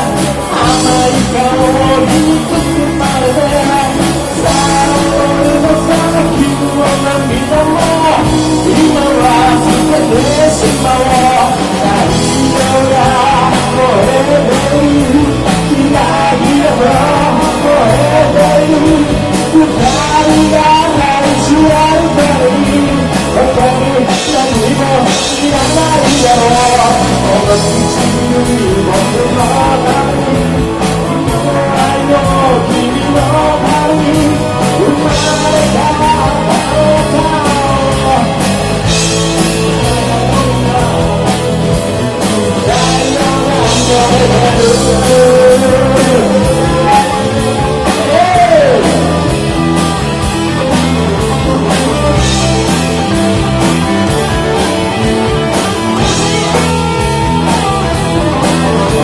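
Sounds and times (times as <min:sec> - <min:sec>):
person singing: 0:00.0 - 0:59.0
rock band playing live: 0:00.0 - 0:59.0.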